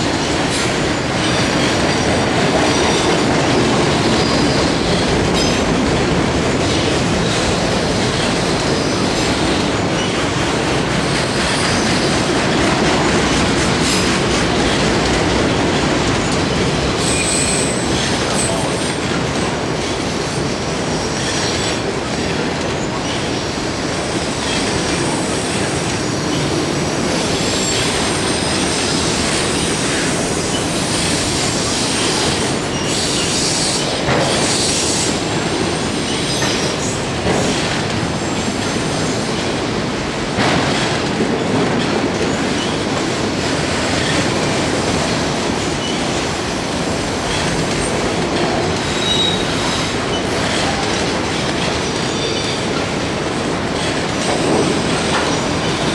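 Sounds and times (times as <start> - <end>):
freight train cars rolling: 0.0 - 55.9
wheel squeal: 16.6 - 19.0, 24.0 - 37.6, 48.8 - 50.9.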